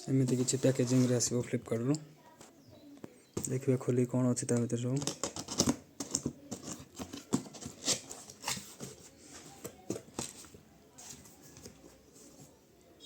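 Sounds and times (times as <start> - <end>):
cardboard packaging rustling: 0.1 - 1.6, 5.0 - 12.4.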